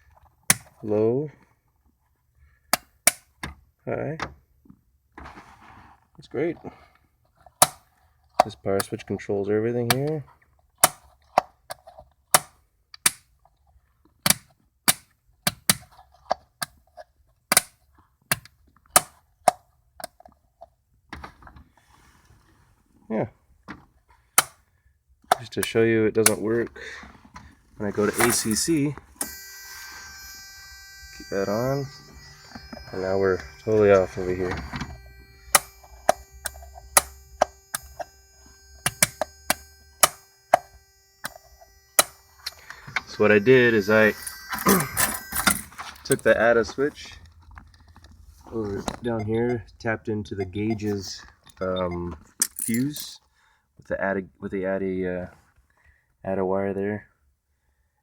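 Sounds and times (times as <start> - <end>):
faint low hum: 25.7 - 53.2
toggle switches clicking: 35.5 - 38.1, 38.8 - 46.3.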